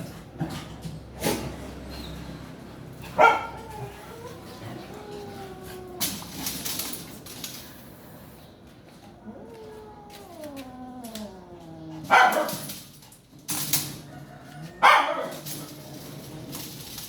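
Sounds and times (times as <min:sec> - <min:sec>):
dog whining: 0:03.0 - 0:08.4, 0:09.0 - 0:12.8
dog barking: 0:03.1 - 0:04.0, 0:12.0 - 0:12.7, 0:14.8 - 0:15.4.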